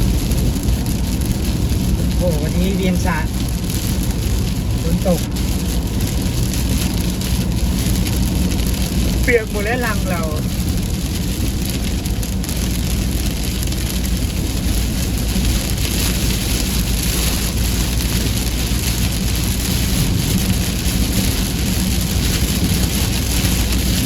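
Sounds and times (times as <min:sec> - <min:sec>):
heavy rain pouring: 0:00.0 - 0:24.0.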